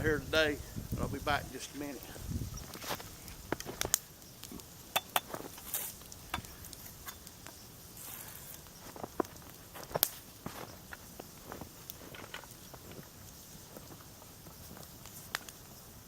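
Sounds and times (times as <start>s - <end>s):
twigs snapping: 2.7s - 7.6s, 8.2s - 13.1s
footsteps in dry leaves: 7.9s - 15.0s.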